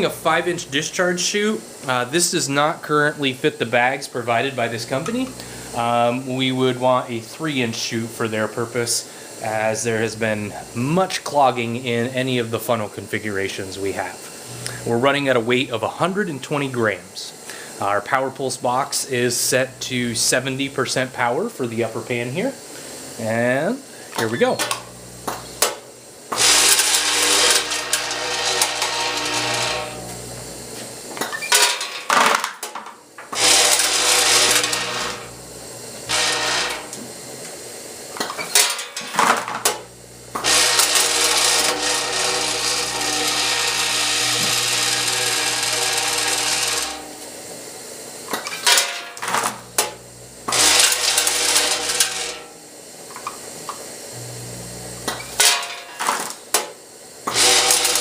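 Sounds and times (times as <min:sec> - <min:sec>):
electric vibrator hum: 0:04.6 - 0:07.0, 0:14.2 - 0:15.2, 0:18.2 - 0:32.1, 0:33.3 - 0:56.3, 0:56.9 - 0:58.0.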